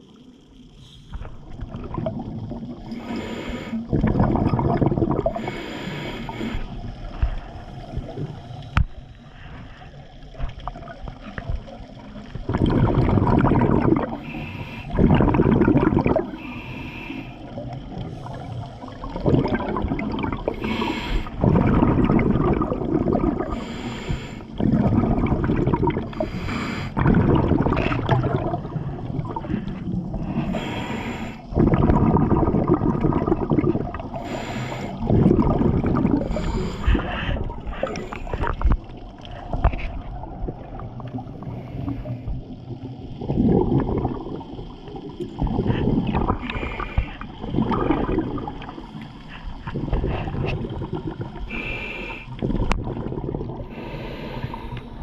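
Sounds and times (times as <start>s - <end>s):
exhaled air bubbling: 0.0s - 55.0s
regulator hiss on inhalation: 2.9s - 3.9s, 5.3s - 6.8s, 14.1s - 15.0s, 16.3s - 18.6s, 20.5s - 21.4s, 23.5s - 24.6s, 26.1s - 27.0s, 30.2s - 31.5s, 34.1s - 35.1s, 36.2s - 38.6s, 51.5s - 52.4s, 53.7s - 55.0s.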